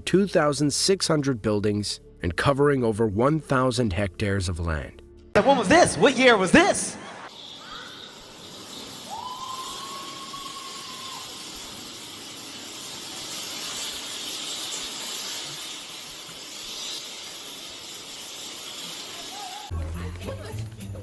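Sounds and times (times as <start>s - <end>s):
steady hissing noise: 7.1s - 19.7s
whistle-like tone: 7.4s - 11.6s.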